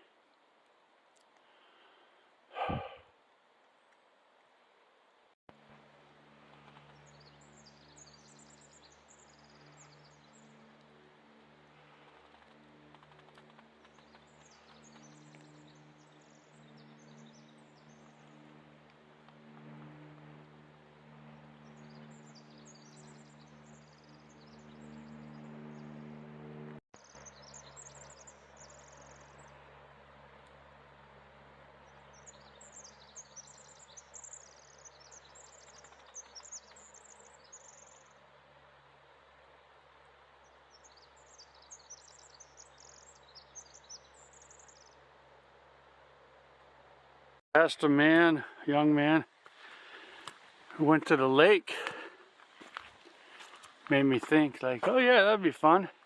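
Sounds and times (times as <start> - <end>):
faint low hum: 0.1 - 47.4
small songbird singing: 6.9 - 10.9, 13.8 - 20.4, 21.0 - 29.6, 31.8 - 38.2, 40.4 - 45.0
songbird trilling: 13.9 - 18.5, 21.3 - 26.1
background hiss: 28.5 - 56.0.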